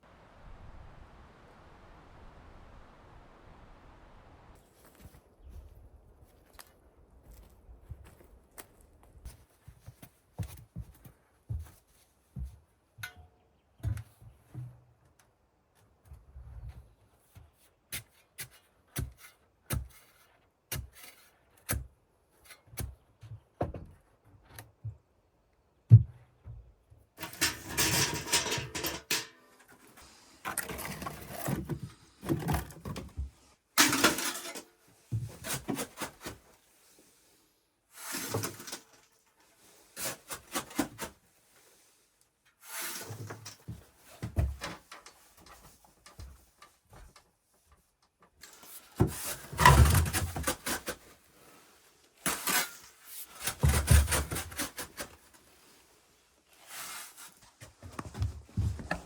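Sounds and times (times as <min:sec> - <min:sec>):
scraping or rustling: 0:27.2 - 0:37.2, 0:37.9 - 0:42.0, 0:42.6 - 0:46.5, 0:48.4 - 0:59.0.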